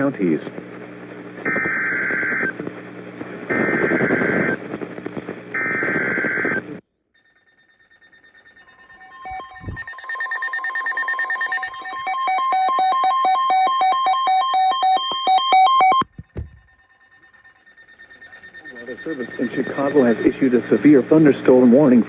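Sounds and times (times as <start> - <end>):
rapid pulsing electronic tones: 5.5 - 22.0
digital data bursts screeching: 7.3 - 16.0, 16.7 - 22.0.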